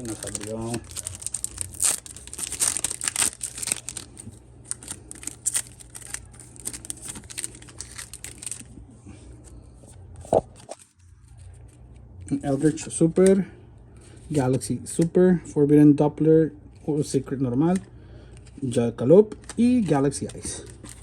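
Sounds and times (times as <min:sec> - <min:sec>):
wrapper crinkling and tearing: 0:00.0 - 0:08.8, 0:19.4 - 0:21.0.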